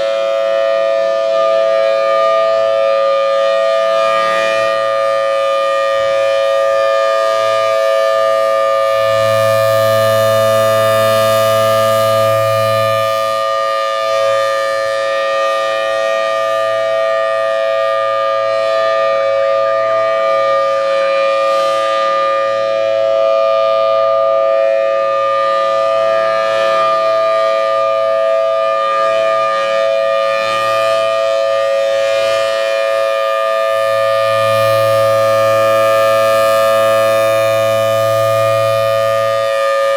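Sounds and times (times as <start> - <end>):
tornado siren two-tone chord: 0.0 - 39.9.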